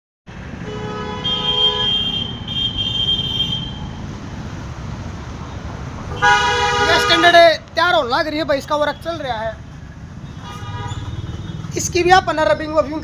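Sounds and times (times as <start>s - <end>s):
vehicle horns sounding: 0.6s - 4.0s, 6.1s - 7.5s, 10.2s - 11.7s.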